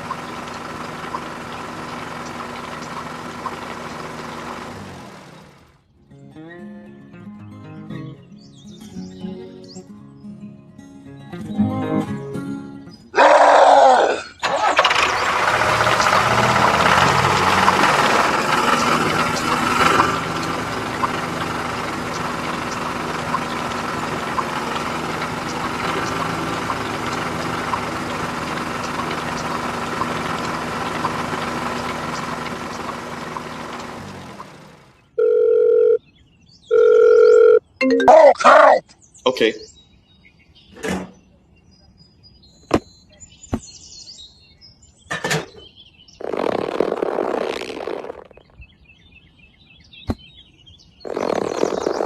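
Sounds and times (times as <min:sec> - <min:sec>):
engine running: 0:00.0 - 0:06.0, 0:14.4 - 0:36.0, 0:51.1 - 0:52.0
short electronic beeps: 0:36.7 - 0:38.4.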